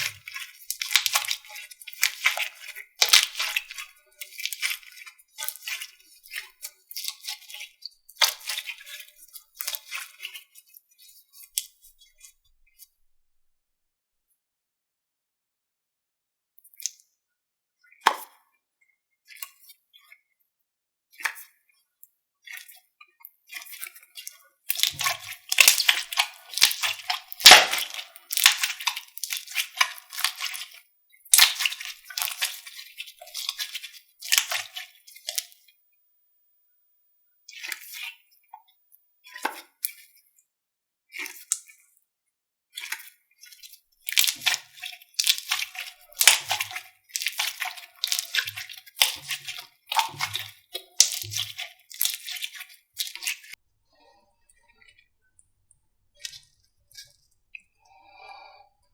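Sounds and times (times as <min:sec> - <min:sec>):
slime crackling and popping: 0:00.4 - 0:01.4, 0:02.0 - 0:03.7, 0:24.7 - 0:35.5, 0:44.1 - 0:53.2.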